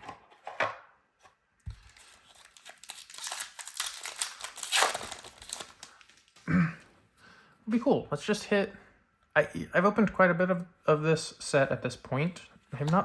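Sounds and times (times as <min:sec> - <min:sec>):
foil wrapper crinkling: 0:01.9 - 0:06.4.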